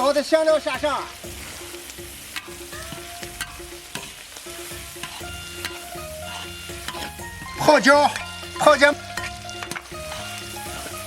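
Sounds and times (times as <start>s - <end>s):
spices sizzling in oil: 0.0s - 11.0s
spatula clicking against pan: 1.8s - 2.6s, 4.9s - 7.2s.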